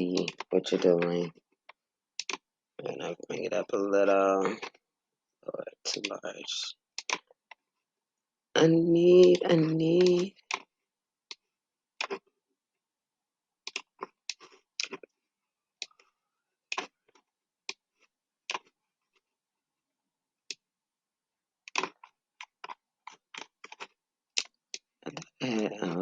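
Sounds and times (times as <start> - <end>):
mouse and keyboard clicks: 2.2 - 2.4, 7.0 - 7.3, 13.7 - 15.0, 21.7 - 24.9.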